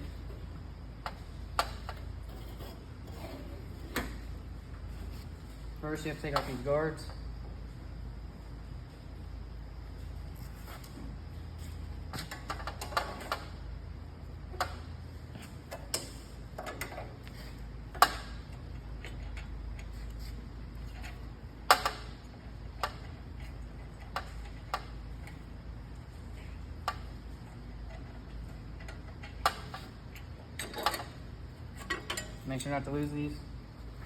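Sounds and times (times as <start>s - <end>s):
low steady hum: 0.0s - 34.0s.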